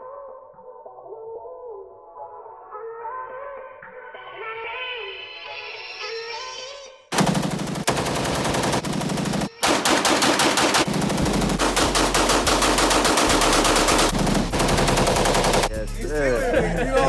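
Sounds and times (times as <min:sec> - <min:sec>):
rapid automatic gunfire: 0:07.1 - 0:15.8.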